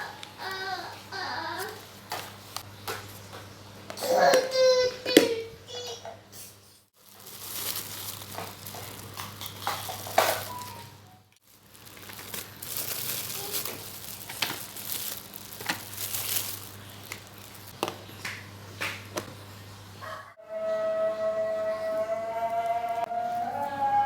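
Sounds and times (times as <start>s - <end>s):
plastic bags crinkling and rustling: 1.5s - 3.3s, 7.0s - 18.2s
containers clicking and knocking: 8.2s - 10.9s.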